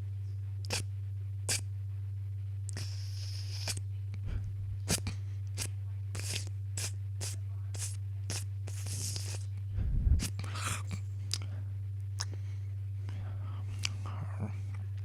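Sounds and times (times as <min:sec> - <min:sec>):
low hum: 0:00.0 - 0:15.0
cat licking: 0:02.7 - 0:03.8, 0:04.8 - 0:09.4.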